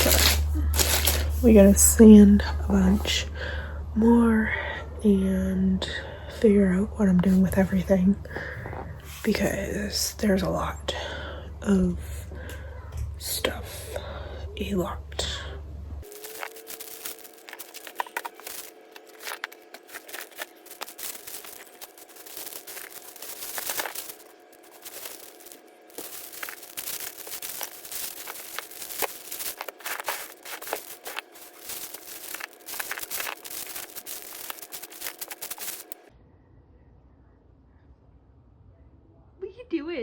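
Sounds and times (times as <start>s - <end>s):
hands crinkling and scratching materials: 0.0s - 3.0s, 16.0s - 36.1s
faint steady hum: 0.0s - 40.0s.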